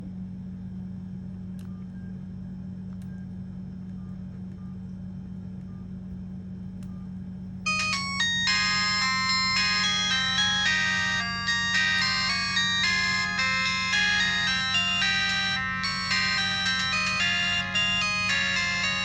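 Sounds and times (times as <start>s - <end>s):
steady low hum: 0.0s - 19.0s
mobile phone ringtone melody: 7.7s - 19.0s.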